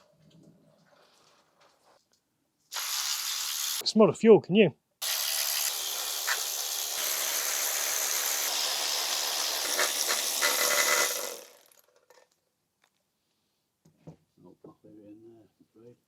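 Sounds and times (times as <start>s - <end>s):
gas hissing under pressure: 2.7s - 3.8s.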